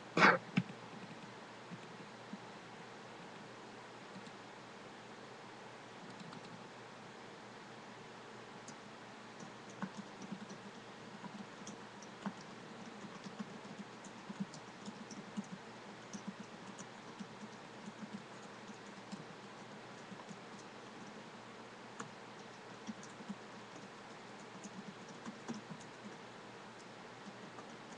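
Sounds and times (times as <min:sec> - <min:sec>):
typing on computer keyboard: 0:06.1 - 0:06.6, 0:09.4 - 0:21.2, 0:22.0 - 0:26.2.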